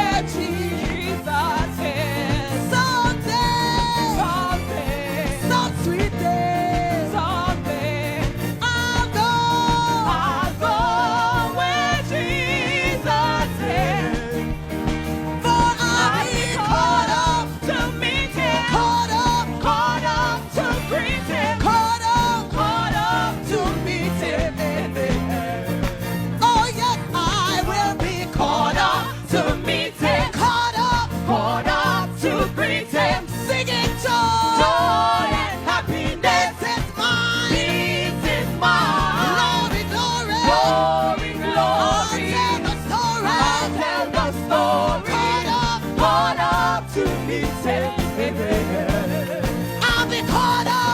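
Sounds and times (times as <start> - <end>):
band accompaniment with beat: 0.0 - 50.9
bass and drums: 0.0 - 50.9
person singing with vibrato: 0.0 - 50.9.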